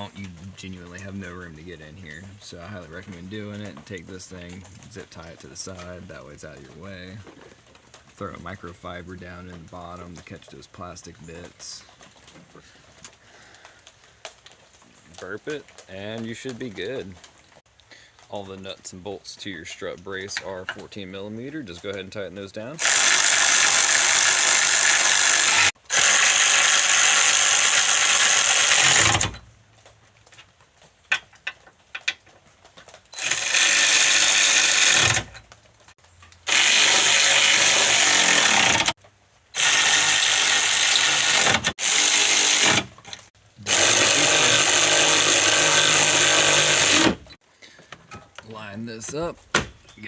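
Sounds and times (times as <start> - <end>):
cordless power tool running: 22.8 - 29.4, 33.2 - 35.4, 36.4 - 39.0, 39.6 - 47.4.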